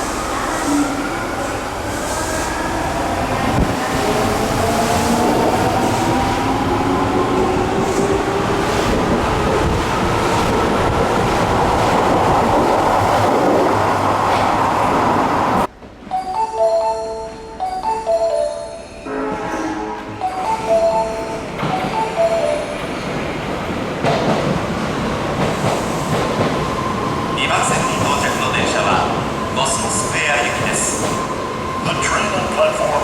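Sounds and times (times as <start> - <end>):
station chime melody: 16.1 - 19.1, 20.2 - 22.7
train wheel noise: 20.4 - 33.0.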